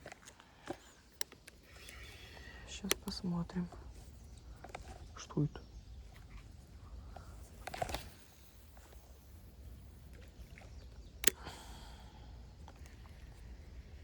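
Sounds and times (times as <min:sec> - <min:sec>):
fishing reel click: 0:00.2 - 0:05.0, 0:11.2 - 0:11.6.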